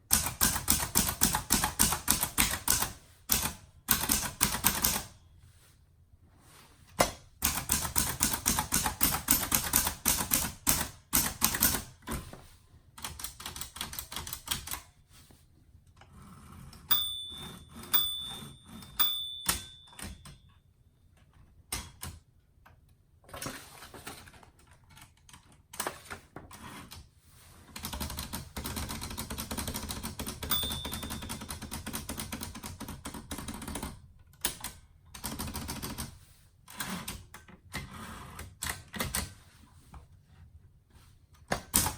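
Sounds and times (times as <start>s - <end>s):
typewriter keystrokes: 0.1s - 5.1s, 7.0s - 11.9s, 13.0s - 14.9s, 27.8s - 36.1s, 41.5s - 41.9s
typewriter strikes with ring: 16.9s - 20.5s, 30.4s - 31.9s.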